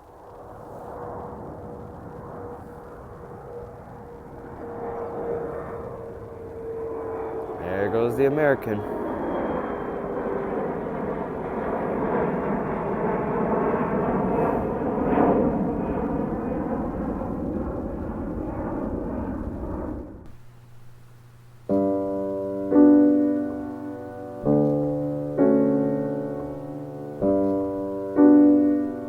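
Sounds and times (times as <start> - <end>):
jet engines at takeoff: 0.0 - 29.0
slow piano chords: 20.3 - 29.0.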